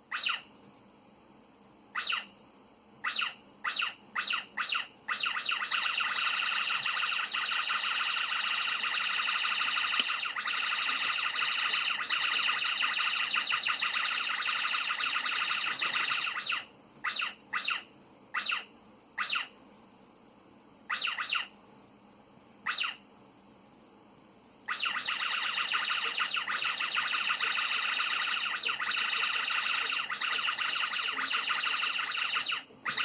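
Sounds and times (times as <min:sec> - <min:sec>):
pet bird squawking: 0:00.1 - 0:00.5, 0:02.0 - 0:02.3, 0:03.0 - 0:19.5, 0:20.9 - 0:21.5, 0:22.6 - 0:23.0, 0:24.7 - 0:33.0.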